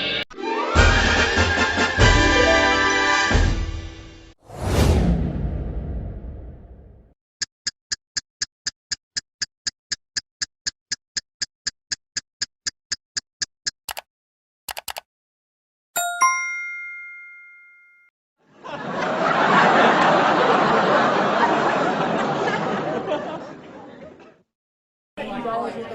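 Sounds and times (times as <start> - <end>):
bright ding: 16.0 - 18.1
crowd noise: 18.6 - 24.4, 25.2 - 25.9.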